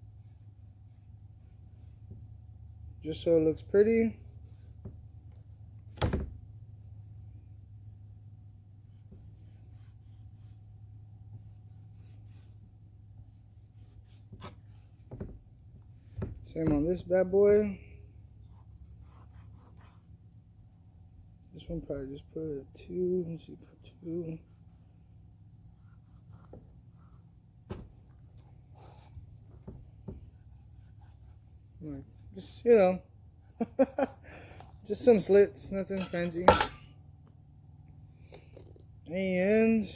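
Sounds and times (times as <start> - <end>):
low steady hum: 0.0 - 39.9.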